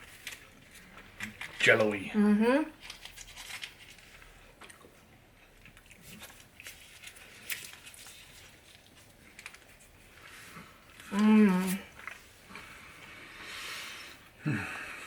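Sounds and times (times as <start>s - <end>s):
faint chewing: 2.8s - 13.2s.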